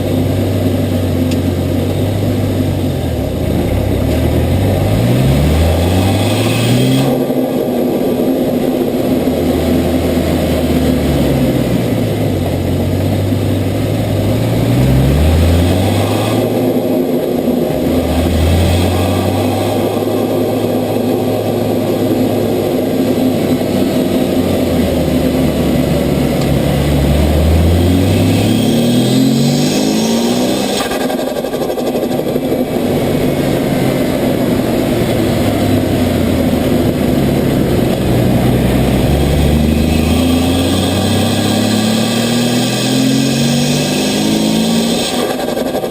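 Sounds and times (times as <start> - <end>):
car engine revving: 0.0 - 45.9
turbo flutter: 16.0 - 45.9.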